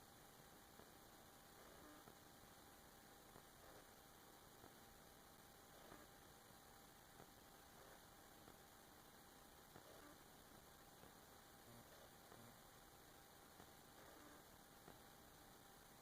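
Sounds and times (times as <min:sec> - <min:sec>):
faint hiss and hum: 0:00.0 - 0:16.0
faint ticks: 0:13.4 - 0:16.0.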